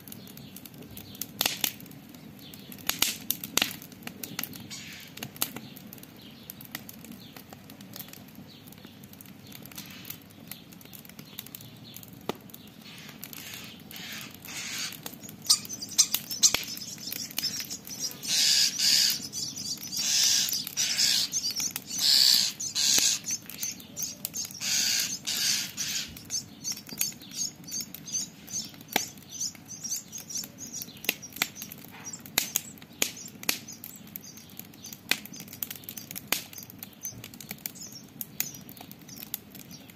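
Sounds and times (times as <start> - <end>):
campfire crackling and popping: 0.0 - 39.9
starling scolding calls: 4.7 - 5.1, 12.8 - 34.4.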